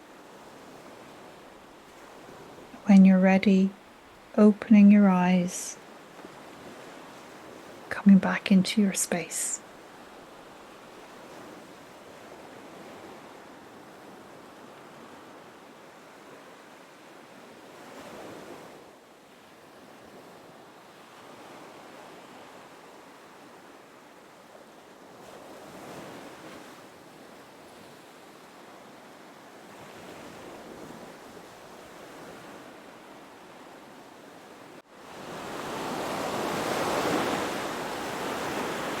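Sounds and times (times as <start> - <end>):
ocean waves washing in: 34.4 - 39.0.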